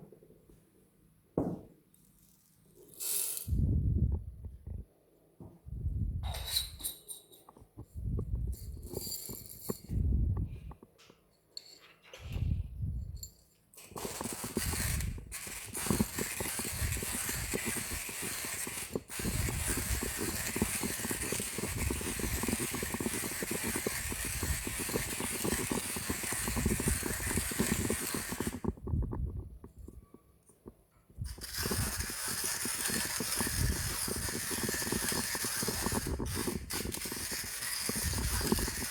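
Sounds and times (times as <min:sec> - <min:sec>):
manual coffee grinder grinding beans: 0:02.1 - 0:03.8, 0:07.5 - 0:10.8, 0:13.8 - 0:38.9.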